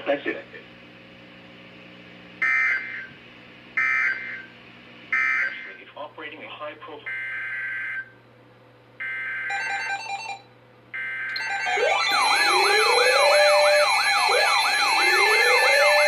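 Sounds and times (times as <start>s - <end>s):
alert alarm siren wail: 9.0s - 10.4s, 11.0s - 16.0s
screeching paired data tones: 11.4s - 16.0s.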